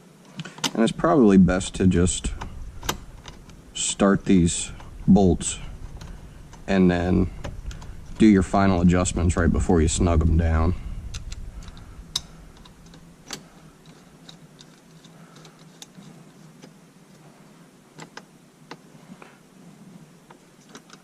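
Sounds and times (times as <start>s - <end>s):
faint clicks of bolts: 1.5s - 9.5s, 11.0s - 16.8s, 20.3s - 21.0s.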